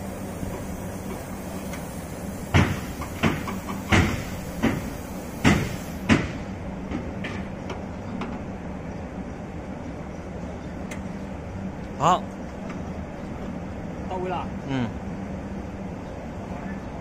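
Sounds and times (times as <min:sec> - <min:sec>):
sharp knocks: 0:02.5 - 0:07.4.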